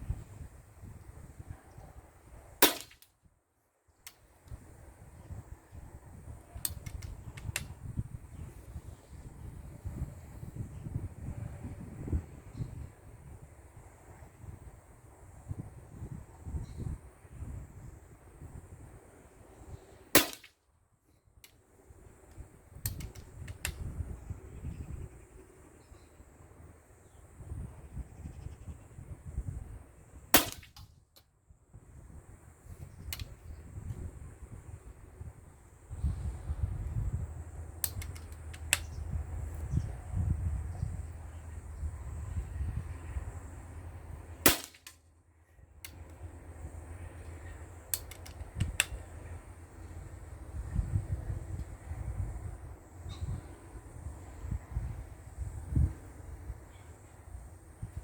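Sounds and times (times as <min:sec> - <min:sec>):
wind on microphone: 0:00.0 - 0:02.6, 0:04.4 - 0:19.9, 0:21.9 - 0:26.0, 0:27.3 - 0:31.0, 0:31.7 - 0:44.6, 0:48.3 - 0:58.0
air rifle shot: 0:02.6 - 0:03.0, 0:20.2 - 0:20.5, 0:30.3 - 0:30.9, 0:44.5 - 0:44.9
air rifle clicks: 0:02.6 - 0:03.1, 0:06.6 - 0:07.8, 0:20.2 - 0:20.5, 0:22.3 - 0:23.9, 0:30.4 - 0:31.3, 0:33.1 - 0:33.4, 0:37.8 - 0:39.0, 0:44.5 - 0:45.0, 0:47.9 - 0:49.1.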